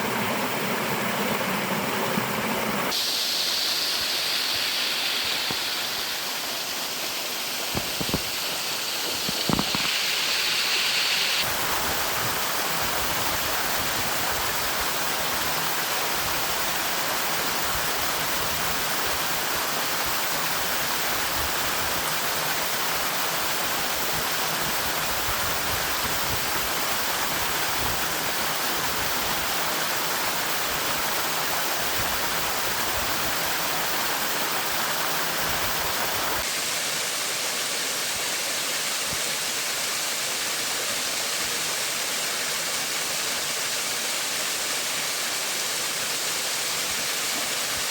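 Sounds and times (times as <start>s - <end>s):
waterfall rushing: 1.6s - 38.2s.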